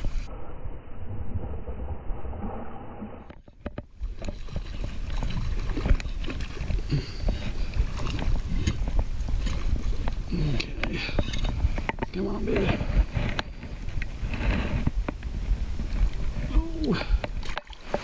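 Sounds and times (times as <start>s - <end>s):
wind rumble on microphone: 0.0s - 18.0s
handling knocks and clicks: 3.3s - 15.3s.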